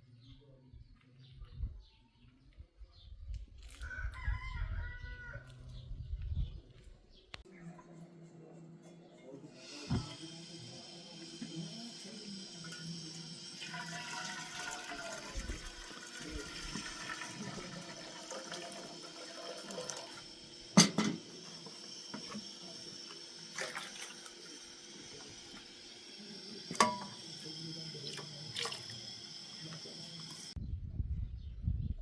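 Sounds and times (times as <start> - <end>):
water running: 9.6 - 30.6.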